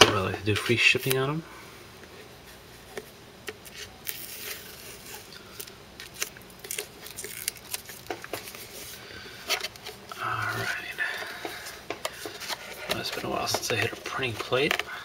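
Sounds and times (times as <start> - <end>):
card packaging clicking and crinkling: 3.5 - 15.0.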